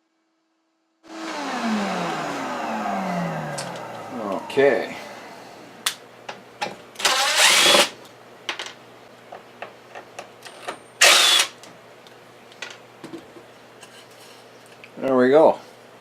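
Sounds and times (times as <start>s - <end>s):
power tool bursts: 1.0s - 4.1s, 7.0s - 8.0s, 11.0s - 11.6s.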